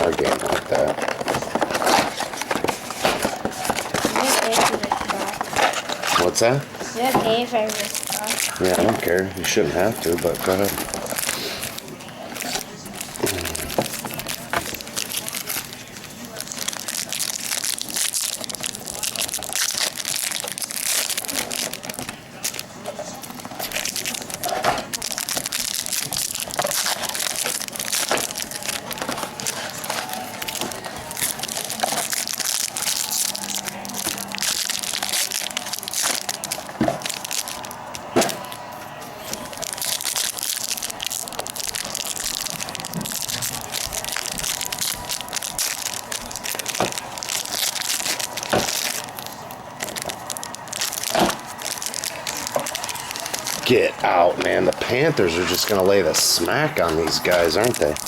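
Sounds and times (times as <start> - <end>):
card pack wrappers crinkling: 0.0 - 58.0.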